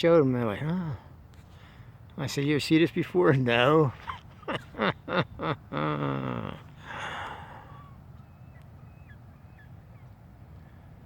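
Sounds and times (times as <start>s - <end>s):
breathy exhale: 6.8s - 8.0s.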